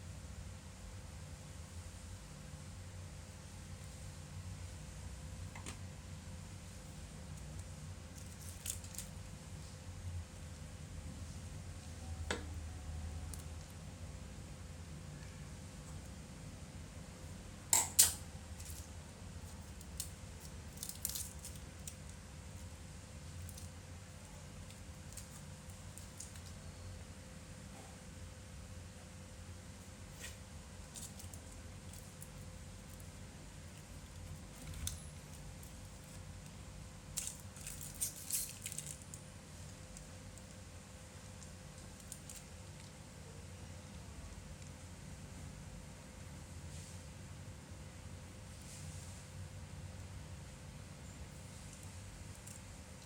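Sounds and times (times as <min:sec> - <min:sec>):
faint electrical hum: 0:00.0 - 0:53.0
small tools clicking and rustling: 0:37.2 - 0:39.2.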